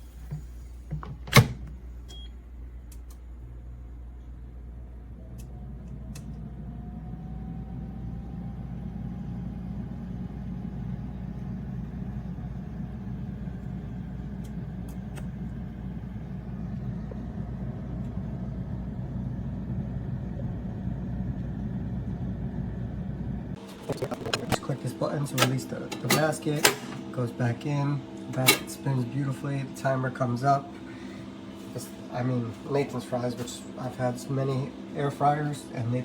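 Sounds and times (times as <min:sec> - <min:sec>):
air fryer fan hum: 0:00.0 - 0:36.0
thin whine rising in pitch: 0:04.7 - 0:24.6.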